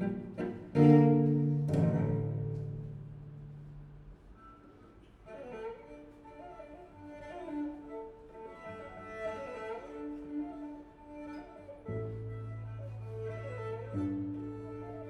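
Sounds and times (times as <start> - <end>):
violin melody: 0.0 - 2.9, 5.3 - 15.0
held low string notes: 0.0 - 4.0.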